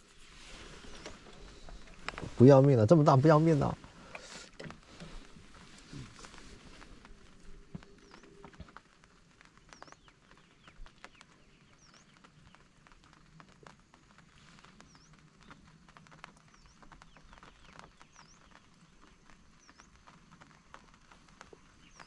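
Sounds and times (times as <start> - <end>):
bird chirping: 7.8 - 8.6.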